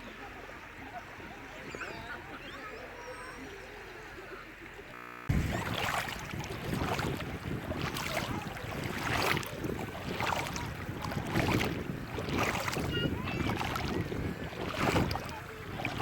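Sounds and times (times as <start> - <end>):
wind: 0.0 - 16.0
sea waves: 5.3 - 16.0.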